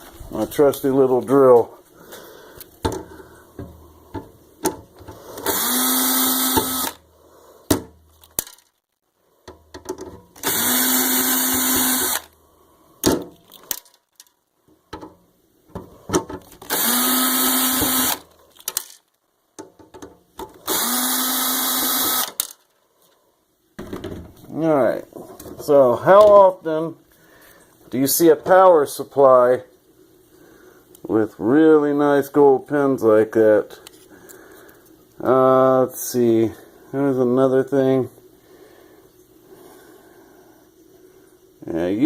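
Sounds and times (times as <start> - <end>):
small power drill running: 5.4 - 7.0, 10.4 - 12.3, 16.6 - 18.3, 20.6 - 22.5
handling clicks and knocks: 9.4 - 10.4, 19.6 - 20.6.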